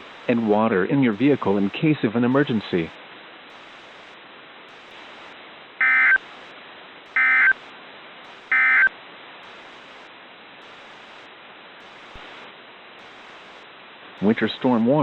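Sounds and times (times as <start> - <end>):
radio hiss: 0.0 - 15.0
digital data tone bursts: 5.8 - 6.3, 7.1 - 7.6, 8.3 - 8.9.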